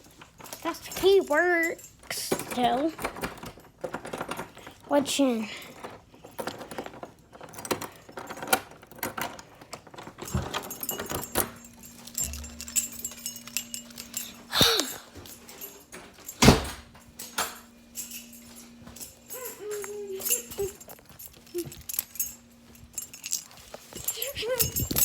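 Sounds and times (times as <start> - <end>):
keys jangling and clicking: 0.0 - 25.0.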